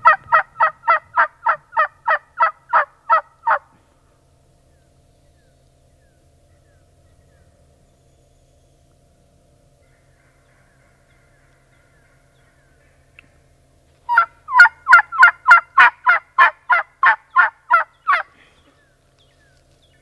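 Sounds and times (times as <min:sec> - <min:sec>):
turkey yelps: 0:00.0 - 0:03.6, 0:14.1 - 0:18.3.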